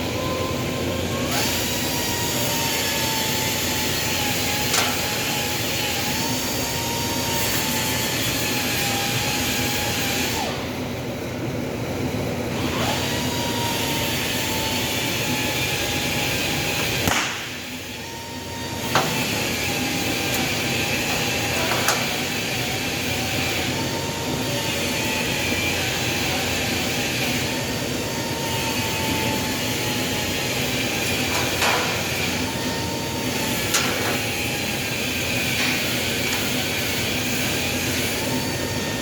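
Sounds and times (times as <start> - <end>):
steady machine hum: 0.0 - 39.0
stud welder cracks: 4.6 - 5.1, 16.8 - 17.7, 33.6 - 34.2.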